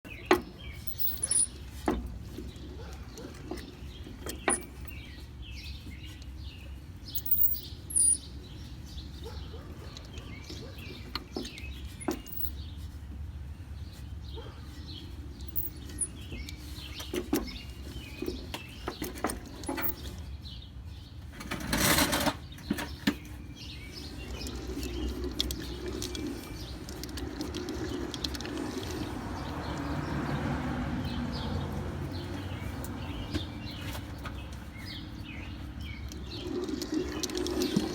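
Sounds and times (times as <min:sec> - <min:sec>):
birds chirping: 0:00.0 - 0:37.9
car drivetrain rumble: 0:21.2 - 0:37.9
rear axle drone: 0:23.6 - 0:37.9.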